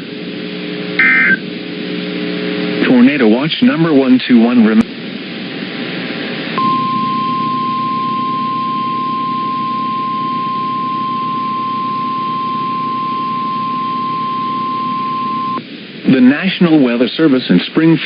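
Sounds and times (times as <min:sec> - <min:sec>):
radio hiss: 0:00.0 - 0:08.0, 0:08.6 - 0:18.0
high steady alarm beep: 0:01.0 - 0:01.4, 0:06.6 - 0:15.6.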